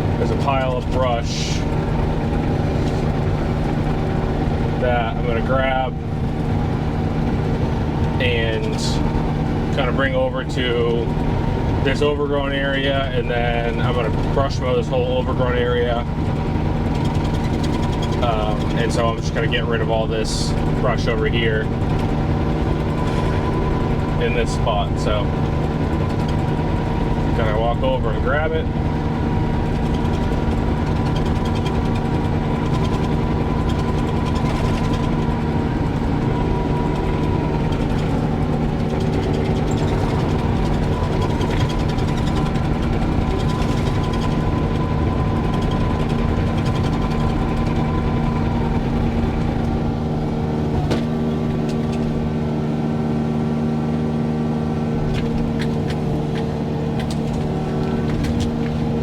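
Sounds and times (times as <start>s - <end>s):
excavator diesel engine running: 0.0s - 59.0s
sharp knocks and clicks: 29.6s - 49.8s, 55.0s - 58.8s.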